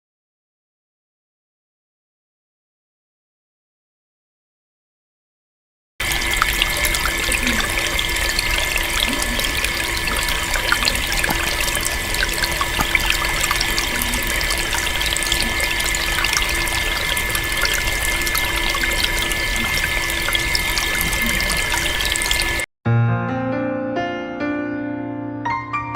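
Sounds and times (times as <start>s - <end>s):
steady hum: 6.0s - 22.7s
water trickling: 6.0s - 22.7s.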